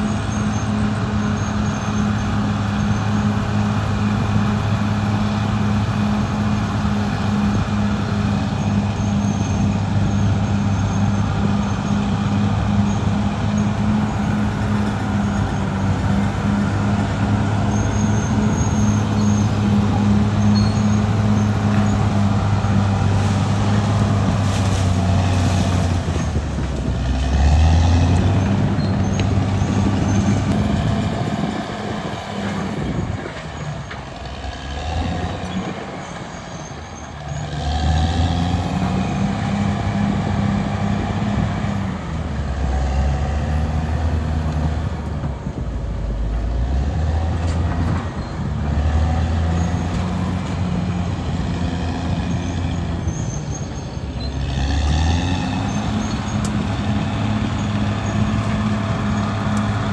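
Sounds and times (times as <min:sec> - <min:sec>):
bulldozer diesel engine: 0:00.0 - 0:59.9.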